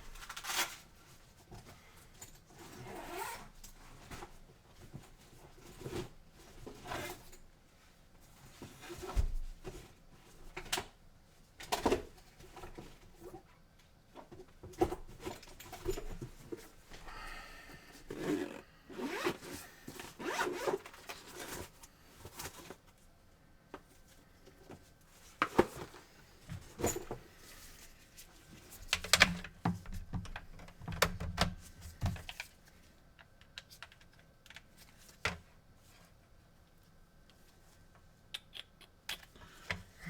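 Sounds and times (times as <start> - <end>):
rustling and scraping: 17.8 - 23.1.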